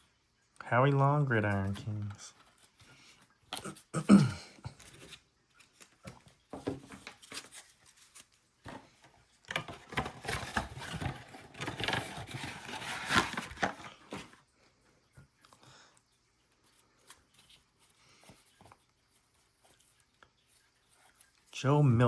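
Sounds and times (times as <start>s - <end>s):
cards clicking and rustling: 4.7s - 14.4s.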